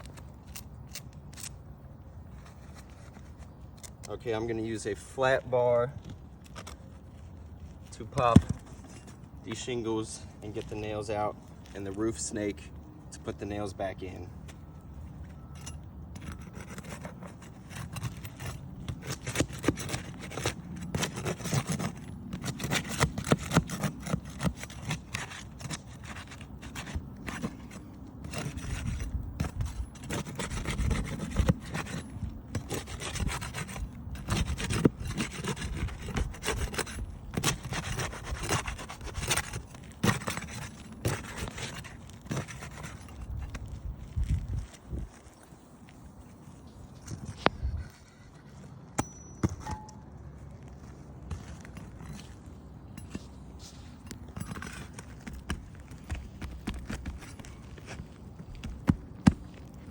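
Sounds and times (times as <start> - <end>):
metal bar scraping shingles: 15.6 - 43.7.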